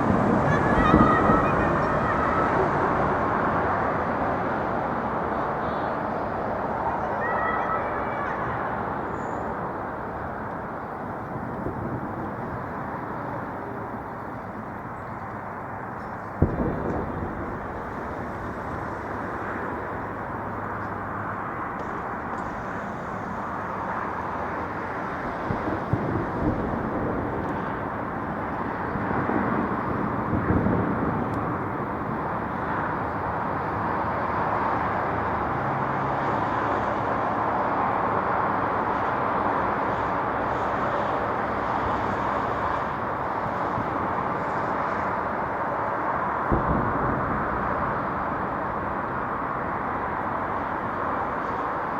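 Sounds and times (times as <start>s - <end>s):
distant fireworks thuds: 0.0s - 32.7s, 46.1s - 51.7s
city noise: 0.0s - 51.9s
wind: 0.0s - 51.9s.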